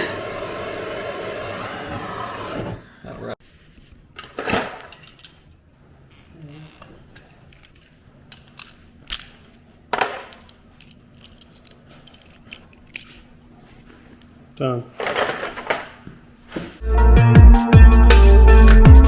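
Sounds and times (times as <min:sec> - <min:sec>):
metal tools clinking and knocking: 0:04.8 - 0:05.6, 0:07.2 - 0:13.5, 0:15.0 - 0:16.0.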